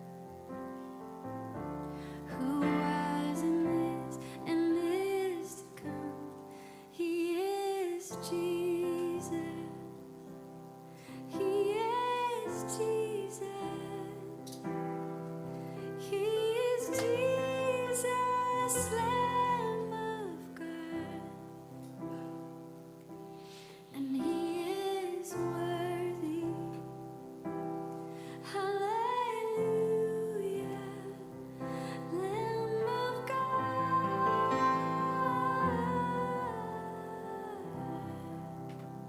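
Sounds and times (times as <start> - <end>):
soft piano chords: 0.0 - 39.0
woman singing with vibrato: 2.2 - 10.2, 11.2 - 14.5, 16.0 - 21.7, 23.9 - 27.0, 28.4 - 38.8.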